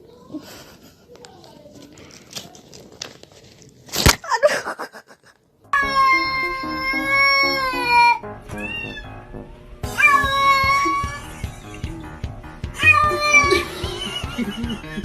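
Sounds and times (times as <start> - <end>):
background music: 5.6 - 15.0
cat meowing: 5.8 - 9.2, 9.9 - 11.4, 12.8 - 13.7.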